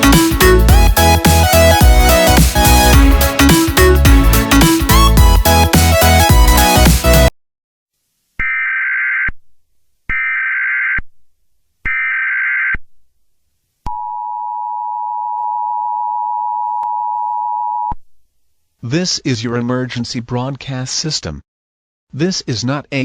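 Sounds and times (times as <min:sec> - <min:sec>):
music: 0:00.0 - 0:07.3.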